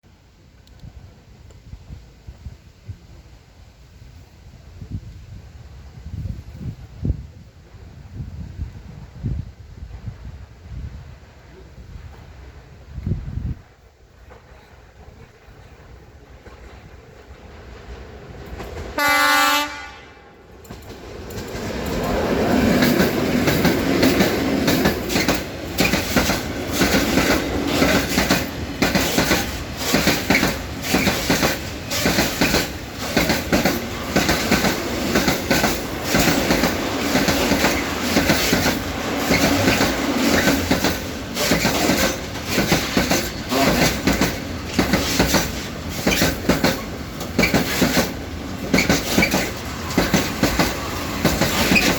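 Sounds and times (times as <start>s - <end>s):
train wheels clattering over rail joints: 16.4s - 19.0s, 20.5s - 51.9s
train horn blast: 19.0s - 20.4s, 43.4s - 44.2s.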